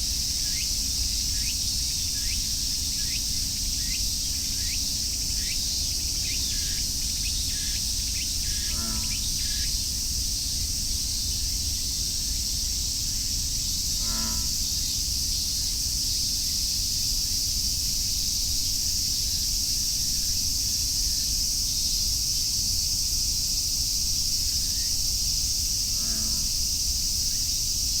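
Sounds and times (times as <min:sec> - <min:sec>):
cicadas chorus: 0:00.0 - 0:28.0
bullfrog low pulsing call: 0:08.4 - 0:09.5, 0:14.0 - 0:14.7, 0:26.0 - 0:26.6.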